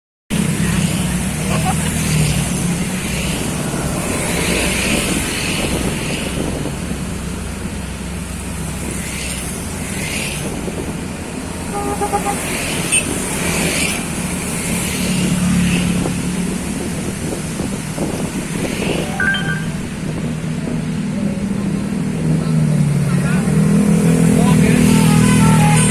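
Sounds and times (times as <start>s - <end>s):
bus engine running: 0.3s - 15.3s
road traffic noise: 0.3s - 25.9s
short horn toot: 11.7s - 13.1s.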